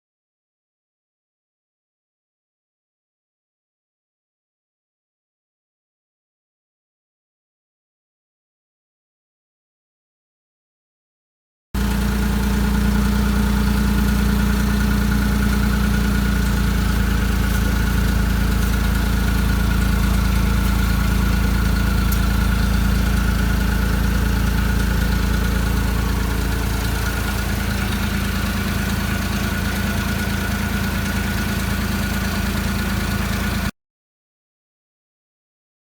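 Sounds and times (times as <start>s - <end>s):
car engine idling: 11.8s - 33.7s.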